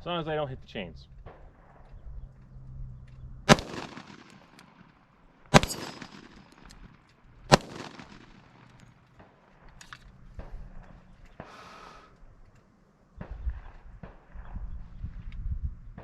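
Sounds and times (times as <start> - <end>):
pistol shots with echo: 3.5 - 9.6.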